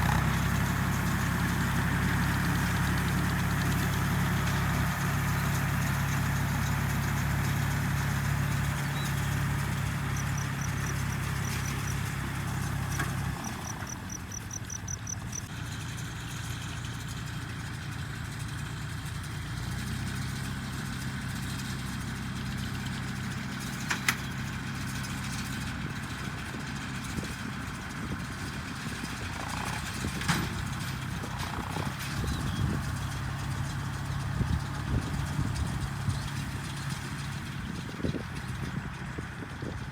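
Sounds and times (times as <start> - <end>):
motor humming: 0.0 - 15.4.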